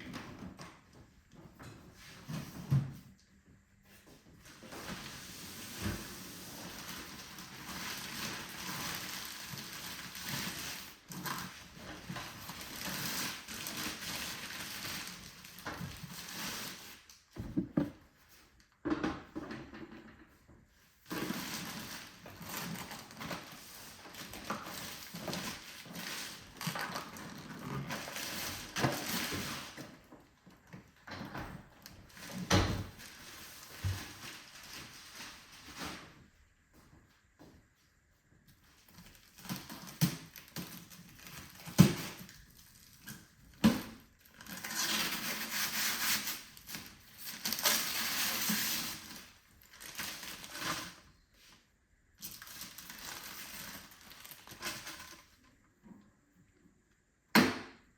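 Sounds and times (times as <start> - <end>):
packaging rustling and crinkling: 4.4 - 17.4, 21.0 - 30.0, 31.8 - 36.2, 38.8 - 51.6, 52.2 - 55.4.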